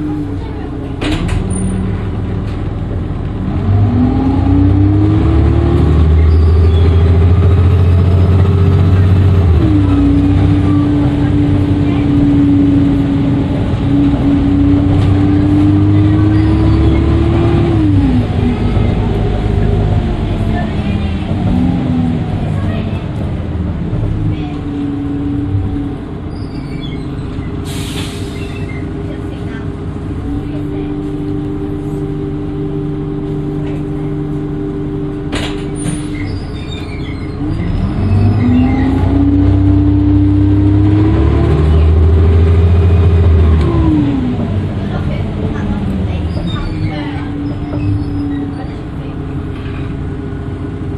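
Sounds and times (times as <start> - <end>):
bus engine droning: 0.0 - 50.9.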